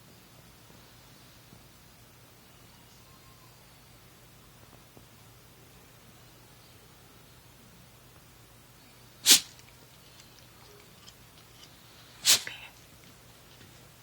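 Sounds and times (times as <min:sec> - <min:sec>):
cat sneezing: 0:09.2 - 0:09.7, 0:12.2 - 0:12.8.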